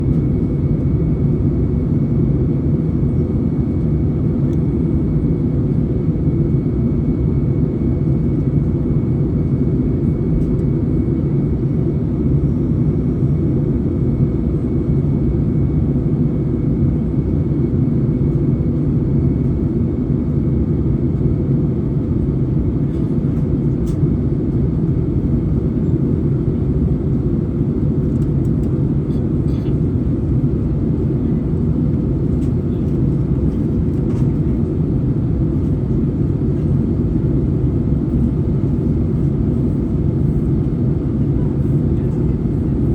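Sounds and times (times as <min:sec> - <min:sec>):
airliner cabin rumble: 0:21.9 - 0:42.9.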